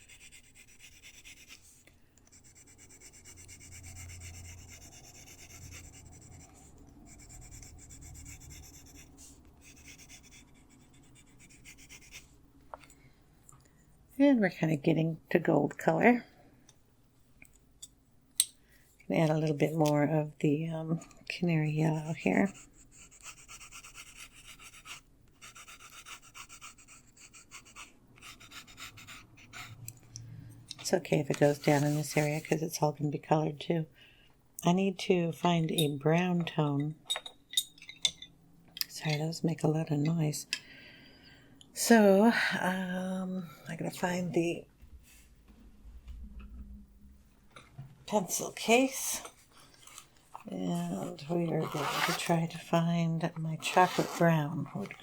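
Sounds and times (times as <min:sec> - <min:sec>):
pencil rubbing on paper: 0:00.0 - 0:12.4, 0:22.0 - 0:29.8, 0:31.4 - 0:32.6.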